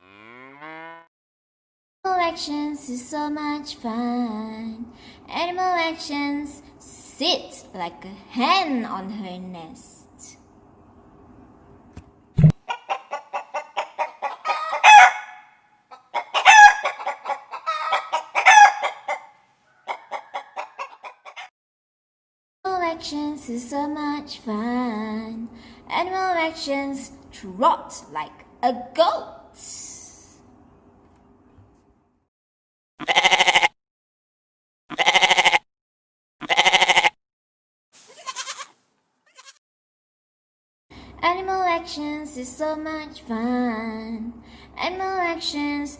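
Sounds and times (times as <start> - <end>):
hens clucking and cackling: 12.6 - 21.5
goat bleating: 33.0 - 33.7, 34.9 - 35.6, 36.4 - 37.2, 38.0 - 39.6.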